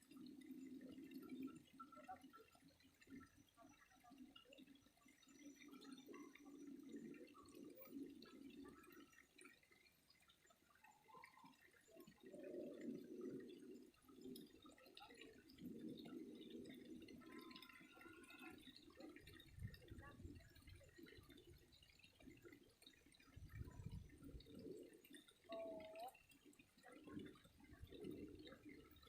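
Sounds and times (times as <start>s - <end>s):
water trickling and dripping: 0.0s - 29.0s.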